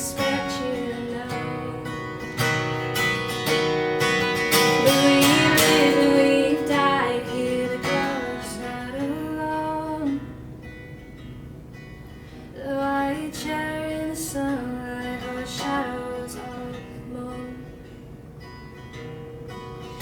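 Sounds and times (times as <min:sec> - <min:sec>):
acoustic guitar strumming: 0:00.0 - 0:20.0.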